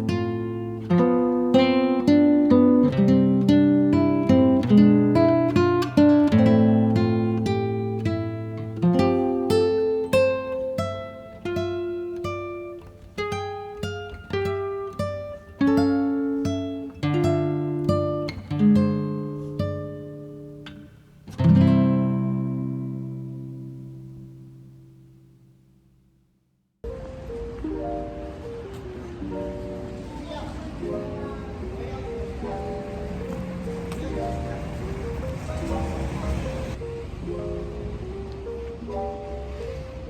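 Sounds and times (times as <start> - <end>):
solo acoustic guitar melody: 0.0 - 26.0, 27.2 - 30.3.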